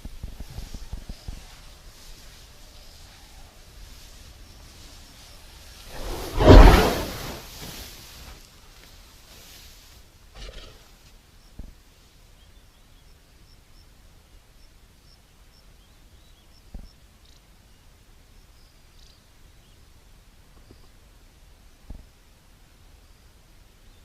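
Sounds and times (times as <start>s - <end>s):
short rustling hiss: 5.0s - 8.4s.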